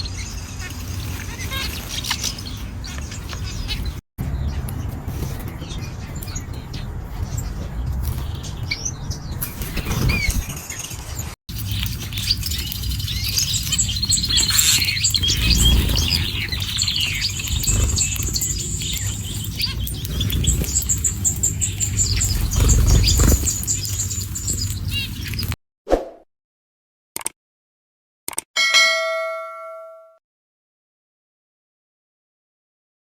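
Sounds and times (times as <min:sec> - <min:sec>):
small birds chirping: 0:00.0 - 0:25.6.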